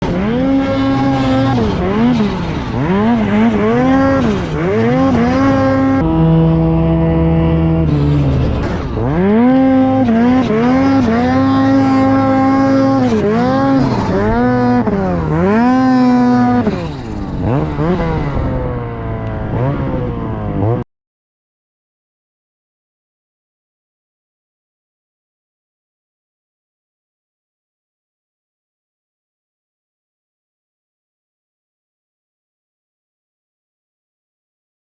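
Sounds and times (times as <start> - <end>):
snowmobile engine revving: 0.0 - 20.8.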